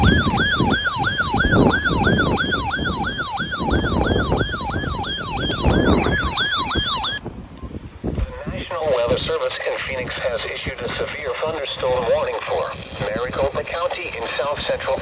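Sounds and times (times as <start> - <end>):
electronic siren yelping: 0.0 - 7.2
low rumbling noise: 0.0 - 15.0.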